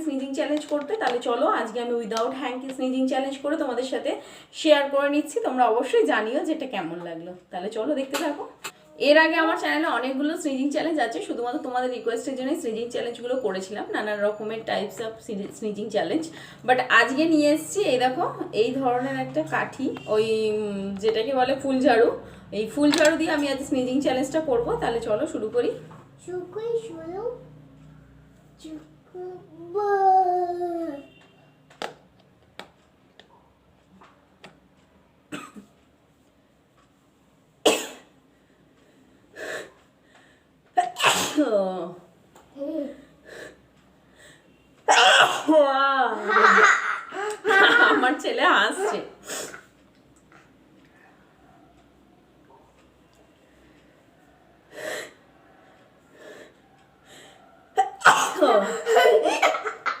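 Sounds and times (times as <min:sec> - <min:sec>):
woman's voice: 0:00.0 - 0:25.9, 0:41.2 - 0:42.1, 0:45.3 - 0:49.2, 0:58.2 - 0:59.4
woman breathing in: 0:16.3 - 0:16.6
woman sneezing: 0:40.8 - 0:41.4, 0:44.9 - 0:45.5
woman sniffing: 0:49.2 - 0:49.7.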